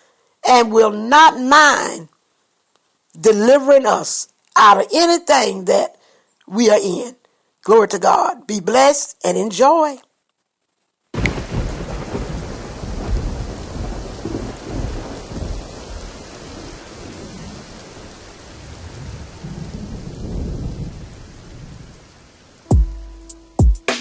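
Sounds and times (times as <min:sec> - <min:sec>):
rain falling: 0:10.2 - 0:23.2
rolling thunder: 0:11.2 - 0:22.0.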